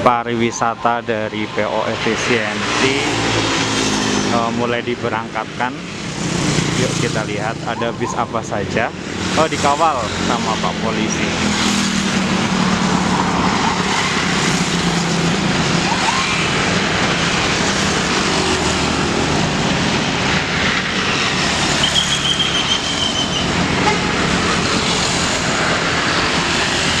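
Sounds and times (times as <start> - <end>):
buses driving past: 0.0 - 27.0
short high-pitched tone: 7.7 - 8.4.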